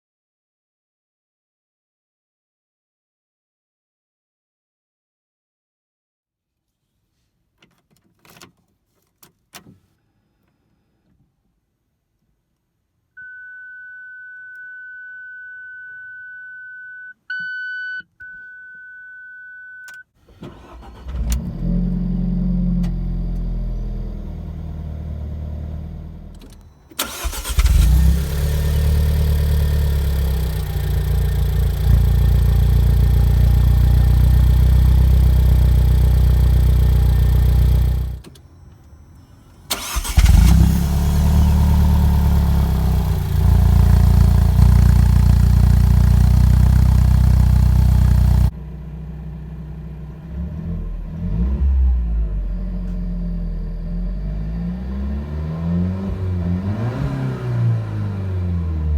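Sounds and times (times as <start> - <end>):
short beep: 13.2 - 20.1
car engine starting and revving: 20.3 - 38.3, 39.4 - 58.9.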